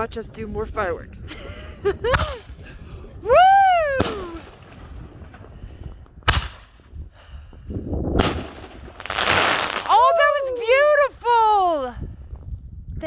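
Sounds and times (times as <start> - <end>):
fireworks bangs: 2.0 - 7.2, 8.1 - 11.0
person cheering: 3.2 - 4.5, 9.9 - 10.8.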